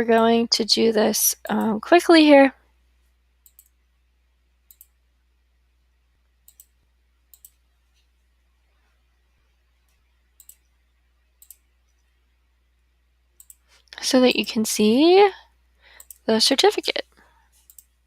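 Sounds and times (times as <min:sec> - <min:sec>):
computer mouse clicking: 0:03.4 - 0:03.8, 0:04.7 - 0:05.0, 0:06.4 - 0:08.1, 0:09.8 - 0:10.7, 0:11.4 - 0:12.1, 0:13.4 - 0:14.4, 0:16.0 - 0:16.3, 0:17.5 - 0:18.0.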